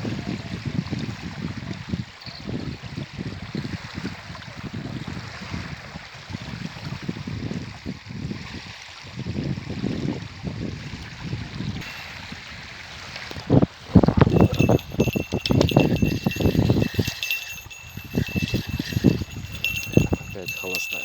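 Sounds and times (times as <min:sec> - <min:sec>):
wind buffeting microphone: 0:11.5 - 0:21.0.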